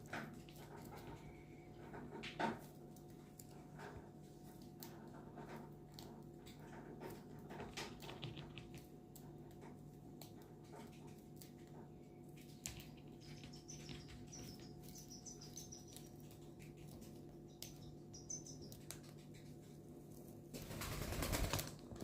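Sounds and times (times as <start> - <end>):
low steady hum: 0.0 - 22.0
cockatiel chirping softly: 12.8 - 19.5.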